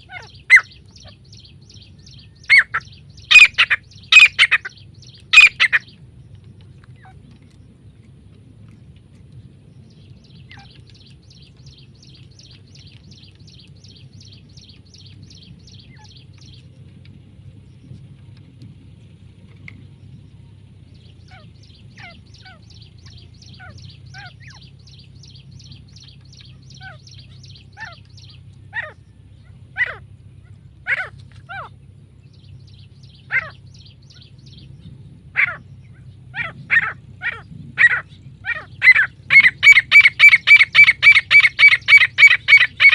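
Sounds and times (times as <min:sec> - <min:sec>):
francolin calling: 0:00.0 - 0:07.7, 0:10.0 - 0:16.7, 0:20.3 - 0:42.9
steady low hum: 0:00.0 - 0:42.9.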